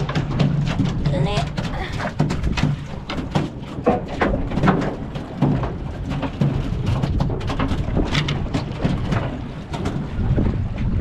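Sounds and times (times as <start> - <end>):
wind rumble on microphone: 0.0 - 11.0.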